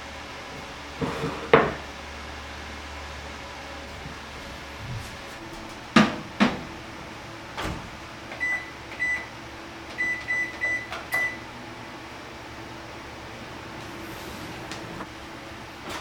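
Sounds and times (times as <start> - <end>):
microwave door clacks: 3.9 - 9.2
microwave keypad beeps: 8.3 - 11.5.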